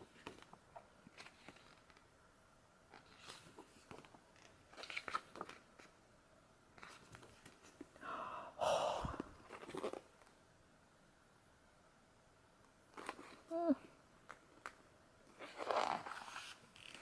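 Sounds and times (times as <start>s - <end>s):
photobook pages turning: 0.0s - 2.1s, 2.9s - 6.0s, 15.4s - 17.0s.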